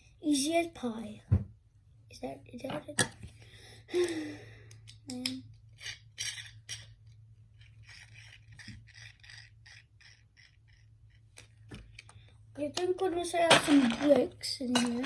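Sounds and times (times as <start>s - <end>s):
plastic pieces rattling by hand: 3.9s - 15.0s.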